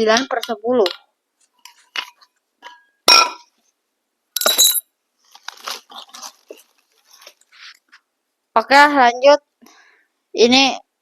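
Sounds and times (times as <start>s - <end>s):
glass tumbler clinking: 4.4s - 4.8s.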